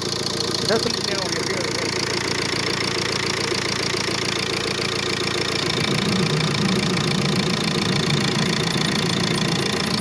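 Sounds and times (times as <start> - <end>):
diesel engine idling: 0.0 - 10.0
engine squeak: 1.9 - 10.0
deep hum: 3.2 - 10.0.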